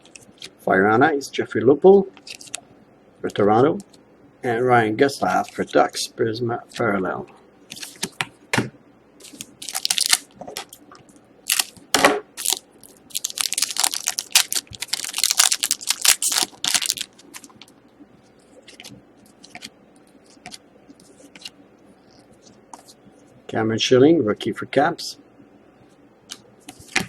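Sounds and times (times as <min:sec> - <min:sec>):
trading cards crinkling and rustling: 0:02.2 - 0:02.6, 0:09.2 - 0:23.0.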